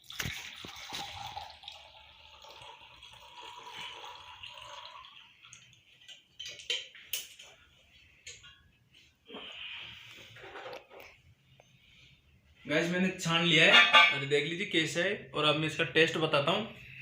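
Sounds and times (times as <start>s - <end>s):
liquid trickling into cup: 0.0s - 7.5s
liquid dripping: 0.0s - 8.6s.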